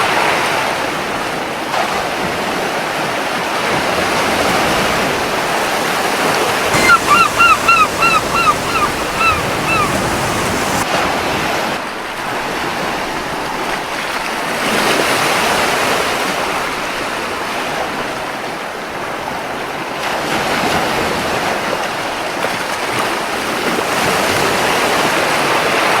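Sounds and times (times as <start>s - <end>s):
ocean waves washing on beach: 1.7s - 16.4s
seagull calling: 6.7s - 10.8s.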